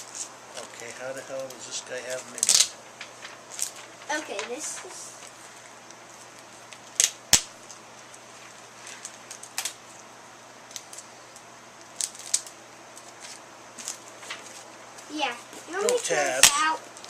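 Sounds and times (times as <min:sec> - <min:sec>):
packaging crinkling: 0:00.0 - 0:10.0, 0:11.8 - 0:14.7.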